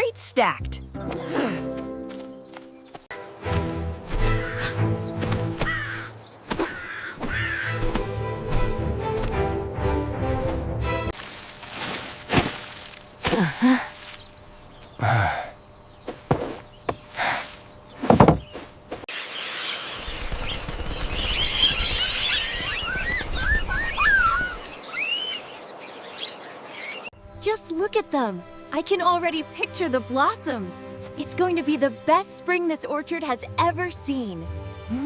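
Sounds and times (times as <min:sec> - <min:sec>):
music: 0:00.0 - 0:06.0, 0:07.3 - 0:11.2, 0:27.2 - 0:35.0
birds chirping: 0:00.0 - 0:08.8, 0:11.2 - 0:34.1
steady outdoor background: 0:00.0 - 0:35.0.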